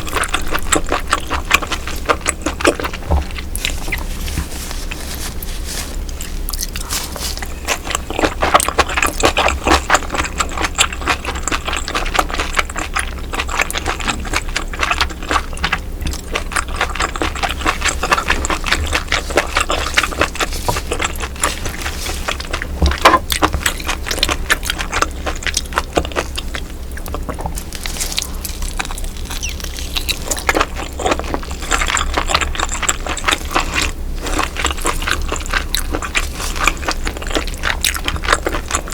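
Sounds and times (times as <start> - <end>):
wet chewing and mouth clicks: 0.0 - 38.9.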